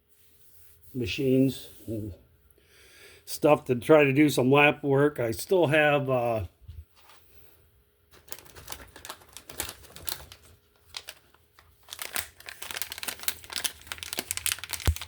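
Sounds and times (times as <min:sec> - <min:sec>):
packaging crinkling: 0:08.1 - 0:15.0.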